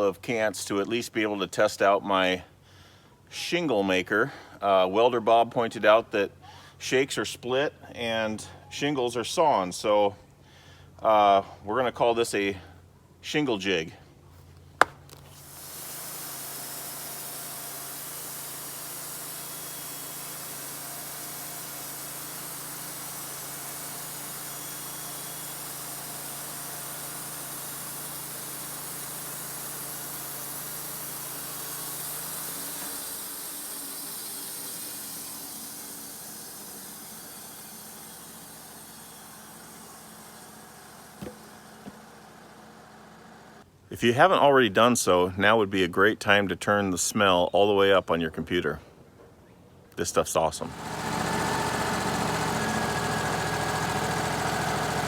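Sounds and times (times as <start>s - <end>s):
light knocks: 14.8s - 15.3s
band saw cutting log: 14.8s - 43.6s, 50.4s - 55.0s.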